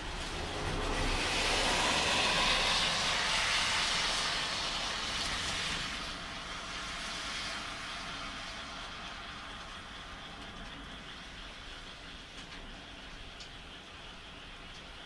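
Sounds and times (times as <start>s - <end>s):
rain hiss: 0.0s - 15.0s.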